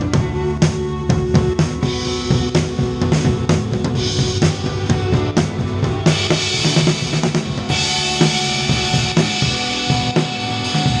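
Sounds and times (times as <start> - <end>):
cymbals washing: 4.0 - 11.0.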